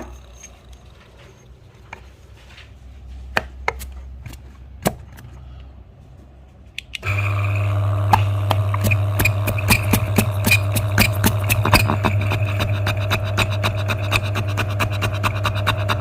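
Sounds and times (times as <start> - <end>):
small electric motor humming: 7.0 - 16.0.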